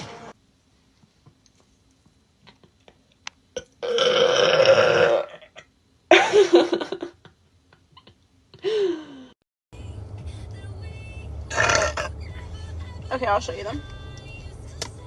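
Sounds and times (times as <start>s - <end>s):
woman burping: 3.6s - 5.7s, 11.5s - 12.1s.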